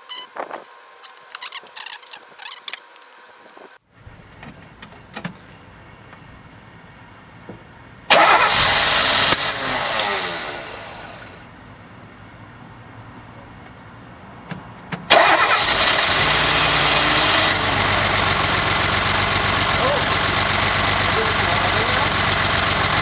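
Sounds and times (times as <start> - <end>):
car engine cranking: 8.1 - 11.4, 14.4 - 23.0.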